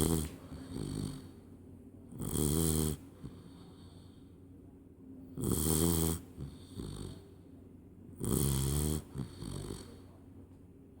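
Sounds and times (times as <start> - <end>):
puppy snoring: 0.0 - 1.5, 2.1 - 4.2, 5.3 - 7.3, 8.1 - 10.1
soft breaths: 3.0 - 4.6.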